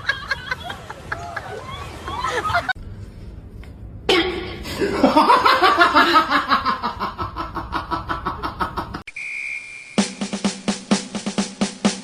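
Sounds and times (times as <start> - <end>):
steady high tone: 9.1 - 10.5.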